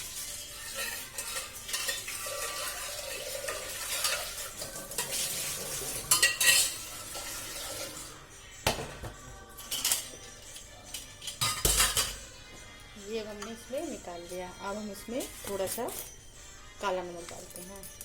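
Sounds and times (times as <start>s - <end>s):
spoon scraping cooking pot: 0.5s - 7.9s.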